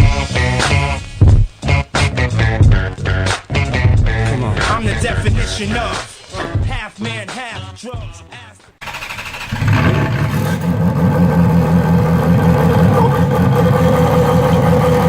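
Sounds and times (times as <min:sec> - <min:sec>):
car engine running: 0:08.8 - 0:15.0.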